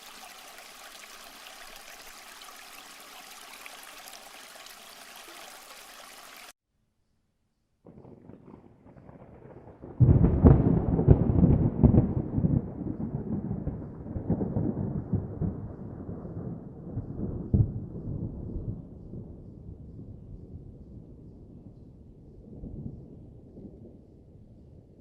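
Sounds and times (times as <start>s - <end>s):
thunder rumble and cracks: 7.9s - 25.0s.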